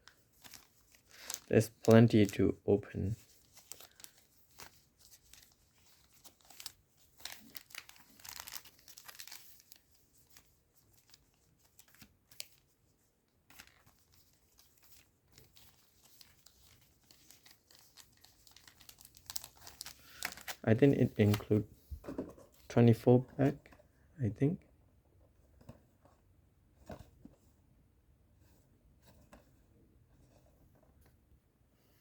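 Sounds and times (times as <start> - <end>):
packaging crinkling and tearing: 0.0 - 2.4, 3.2 - 12.6, 13.5 - 21.6.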